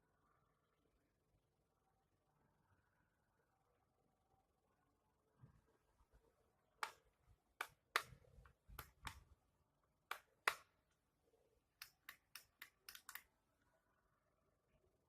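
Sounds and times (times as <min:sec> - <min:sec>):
hard objects clicking and tapping: 0:11.8 - 0:13.2.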